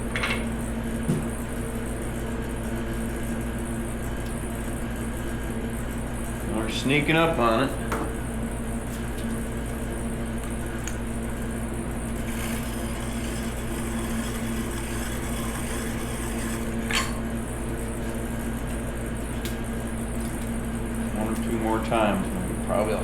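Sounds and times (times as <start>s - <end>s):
electric grinder humming: 12.0s - 18.1s.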